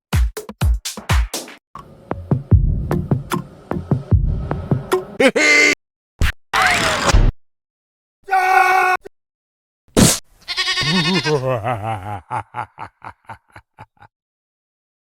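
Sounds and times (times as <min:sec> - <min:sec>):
wavering animal-like cry: 0:10.5 - 0:11.5.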